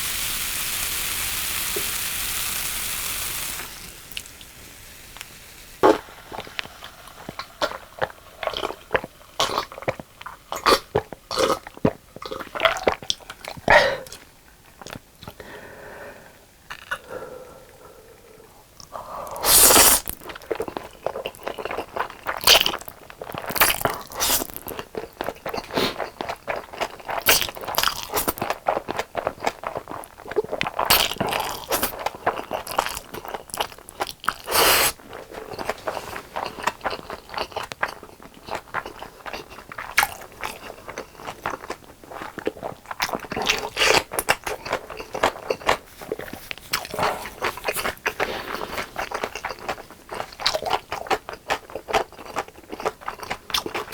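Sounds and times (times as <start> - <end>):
soft chewing: 5.2 - 15.5, 16.7 - 53.9
crunching fried chicken: 19.4 - 53.9.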